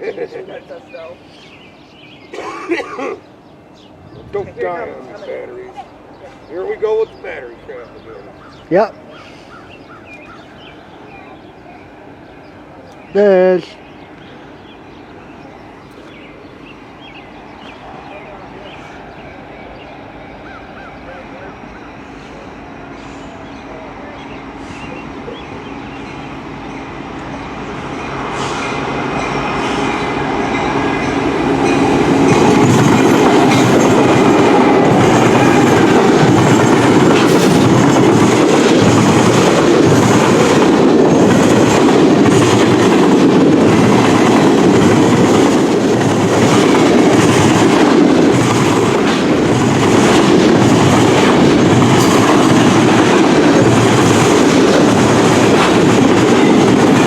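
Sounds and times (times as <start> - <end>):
freight train rumbling past: 0.0 - 57.0
wheels clickety-clack on rail joints: 28.3 - 57.0.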